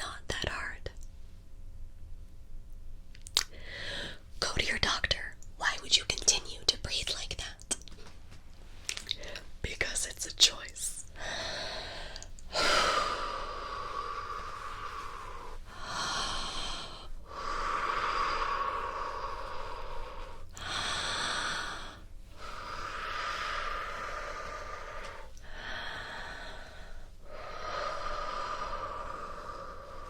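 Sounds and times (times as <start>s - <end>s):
person breathing deeply: 3.5s - 4.3s, 11.1s - 30.0s.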